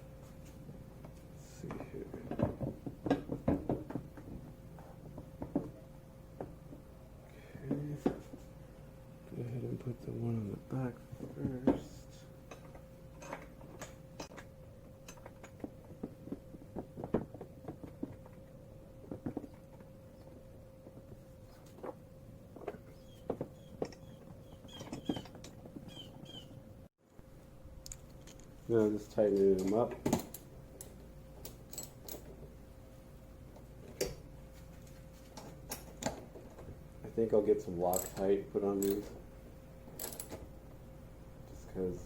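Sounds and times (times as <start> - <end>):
faint steady hum: 0.0 - 42.0.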